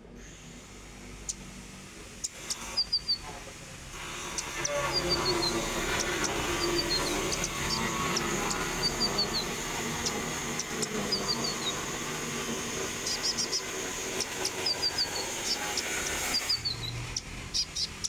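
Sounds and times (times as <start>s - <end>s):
steady hiss: 0.0s - 18.0s
songbird singing high notes: 2.2s - 3.3s, 4.3s - 12.3s, 12.9s - 18.0s.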